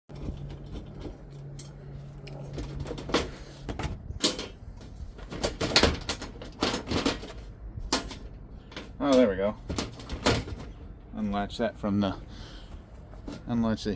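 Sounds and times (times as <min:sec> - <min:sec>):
dishwasher door parts clanking: 0:05.2 - 0:10.8.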